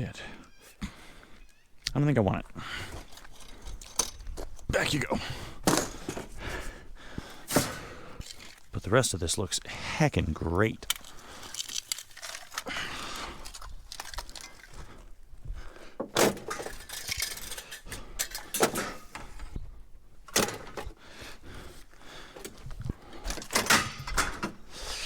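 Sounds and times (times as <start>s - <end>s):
junk rustling and clattering: 2.8s - 9.0s, 10.8s - 24.8s.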